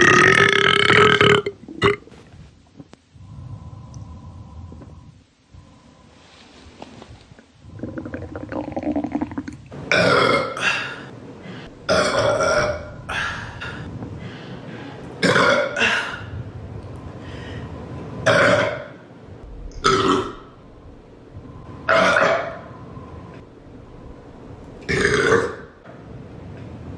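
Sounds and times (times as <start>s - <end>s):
person burping: 0.0s - 2.0s, 7.8s - 11.0s, 11.9s - 13.8s, 15.2s - 16.3s, 18.3s - 18.9s, 19.8s - 20.6s, 24.9s - 25.8s.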